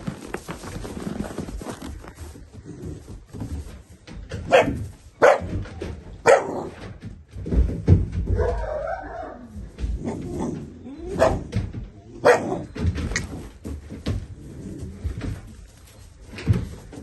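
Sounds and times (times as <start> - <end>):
low thumps and scuffling: 0.0 - 17.0.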